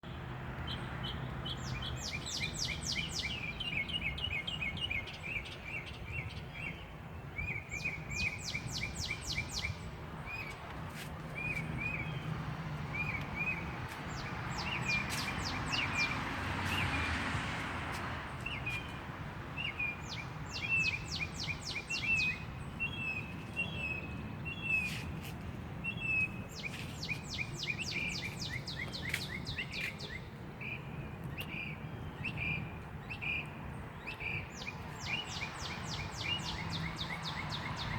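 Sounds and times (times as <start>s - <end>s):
songbird singing: 0.0s - 37.9s.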